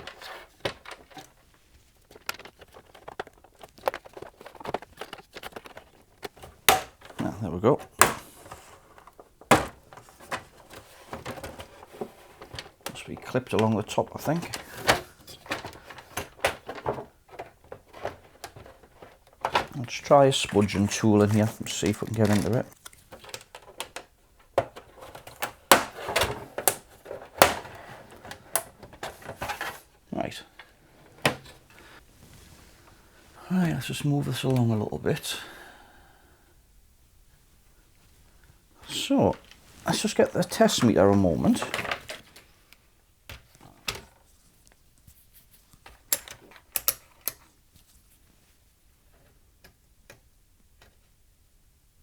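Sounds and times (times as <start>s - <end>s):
plastic panel being handled: 0.0s - 34.8s, 38.8s - 47.6s
plastic clips snapping open: 46.0s - 47.4s.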